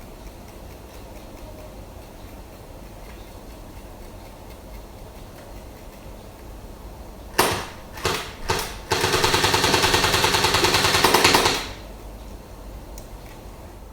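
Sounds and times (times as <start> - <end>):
bb gun full-auto firing: 7.4 - 11.9.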